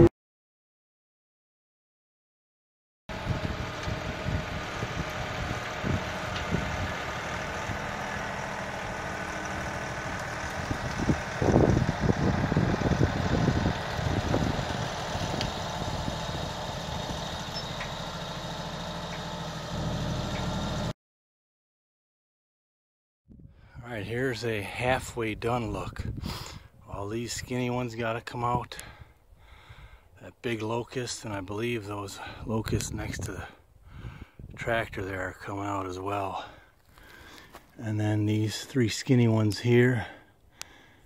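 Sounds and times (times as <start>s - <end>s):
tractor diesel engine running: 3.1s - 20.9s, 36.2s - 37.7s.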